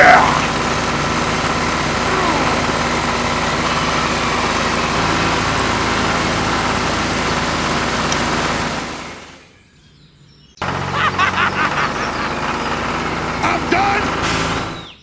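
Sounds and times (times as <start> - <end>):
tractor engine idling: 0.0 - 15.0.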